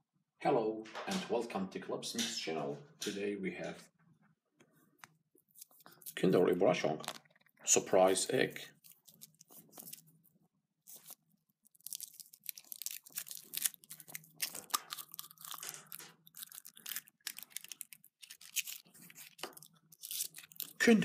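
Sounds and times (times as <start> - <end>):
foil wrapper crinkling and tearing: 5.5 - 8.1, 8.8 - 10.2, 10.9 - 21.0.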